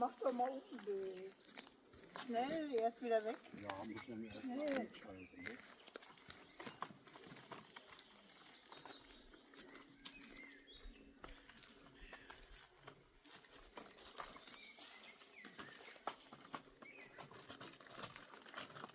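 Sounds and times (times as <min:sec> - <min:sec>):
bird chirps: 0:02.4 - 0:12.6, 0:13.5 - 0:17.4.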